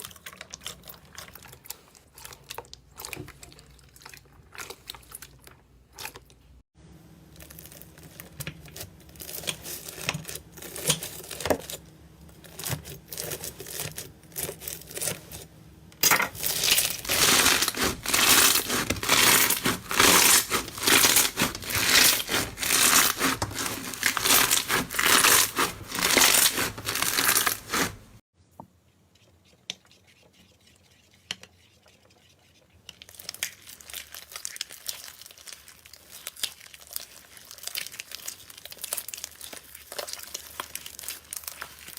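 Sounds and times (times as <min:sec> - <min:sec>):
sticky slime crackling: 0:16.4 - 0:28.2, 0:33.0 - 0:41.9.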